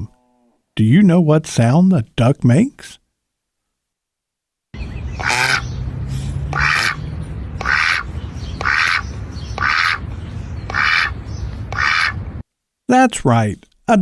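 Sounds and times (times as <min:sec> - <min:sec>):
low background rumble: 0:04.8 - 0:12.5
duck quacking: 0:05.1 - 0:05.8, 0:06.5 - 0:12.2.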